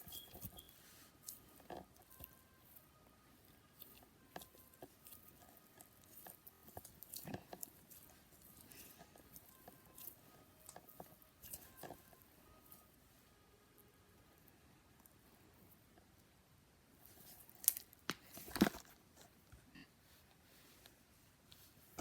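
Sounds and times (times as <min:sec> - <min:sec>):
slime squishing and crackling: 0:00.0 - 0:02.9, 0:03.7 - 0:12.2, 0:17.0 - 0:18.9.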